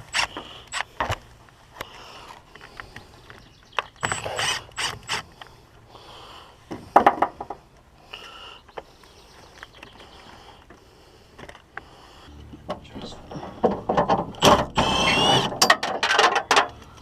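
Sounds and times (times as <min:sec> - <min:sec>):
hand tools clicking and rattling: 0:13.4 - 0:16.8.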